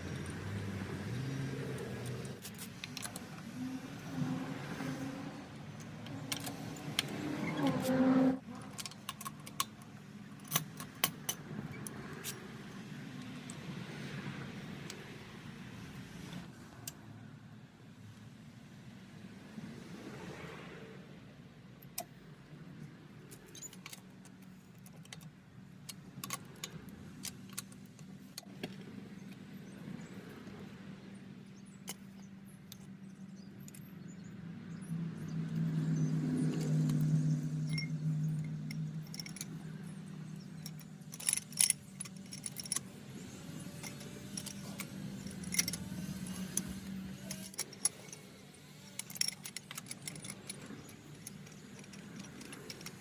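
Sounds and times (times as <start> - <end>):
small metal tools clinking: 36.5 - 53.0.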